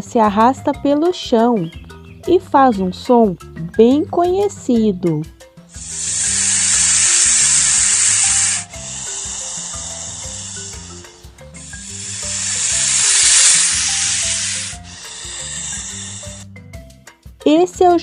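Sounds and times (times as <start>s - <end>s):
snake hissing: 5.7s - 16.6s.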